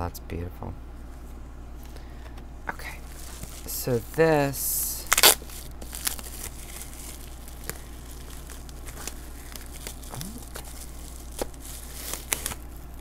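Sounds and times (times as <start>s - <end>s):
low steady hum: 0.0s - 13.0s
packaging crinkling and clicking: 5.1s - 13.0s.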